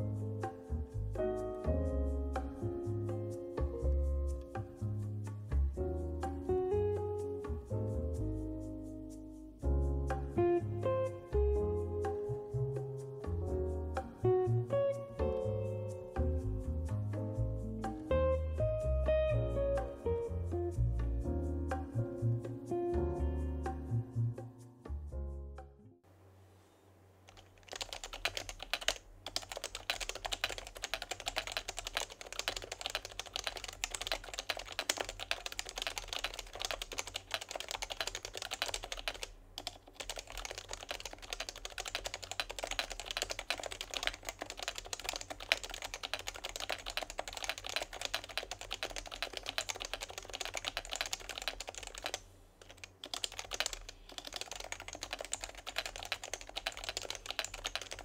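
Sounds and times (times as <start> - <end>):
keyboard typing: 27.3 - 58.0.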